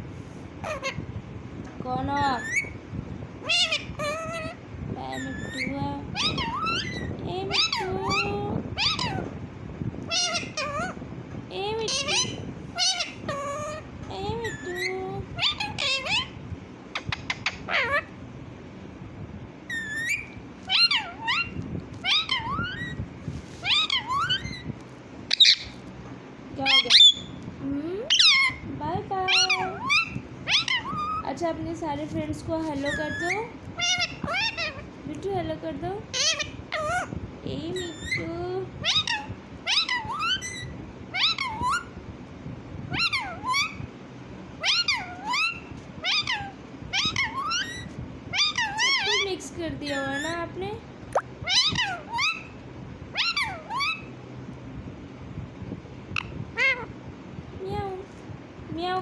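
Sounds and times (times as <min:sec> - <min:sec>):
parrot meowing: 0:03.4 - 0:04.6, 0:05.2 - 0:09.3, 0:10.1 - 0:11.0, 0:11.9 - 0:16.4, 0:17.0 - 0:18.1, 0:19.7 - 0:23.0, 0:23.6 - 0:24.7, 0:29.3 - 0:31.2, 0:32.8 - 0:34.9, 0:36.1 - 0:37.1, 0:38.8 - 0:41.9, 0:42.9 - 0:43.8, 0:44.6 - 0:49.2, 0:51.4 - 0:54.1, 0:56.2 - 0:56.9.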